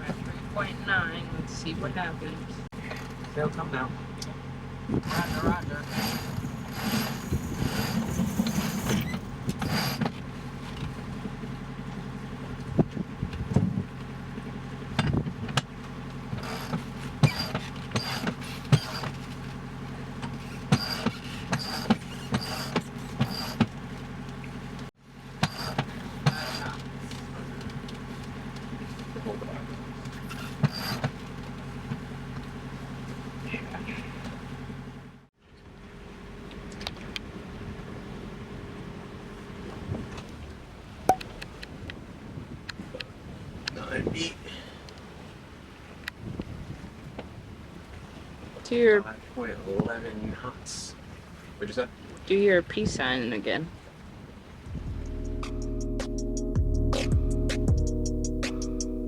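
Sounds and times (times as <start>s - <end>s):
boat engine running: 0.0s - 59.0s
boat gear clicking and creaking: 2.8s - 3.6s, 4.2s - 14.2s, 14.9s - 34.4s, 36.4s - 37.3s, 39.6s - 42.0s.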